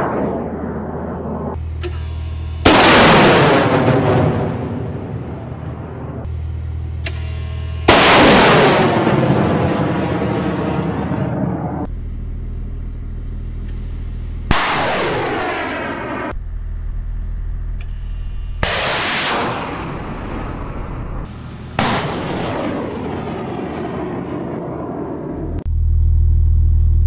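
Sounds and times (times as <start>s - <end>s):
missile blasts with falling whoosh: 0.0s - 1.6s, 2.6s - 6.3s, 7.9s - 11.9s, 14.5s - 16.4s, 18.6s - 25.6s
steady low rumble: 0.0s - 27.0s.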